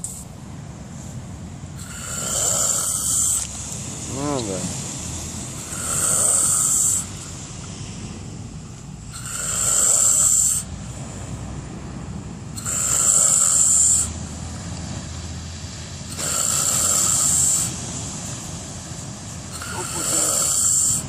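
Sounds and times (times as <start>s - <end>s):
person snoring: 1.8s - 3.4s, 5.6s - 7.1s, 9.2s - 10.7s, 12.6s - 14.1s, 16.1s - 17.7s, 19.6s - 21.0s.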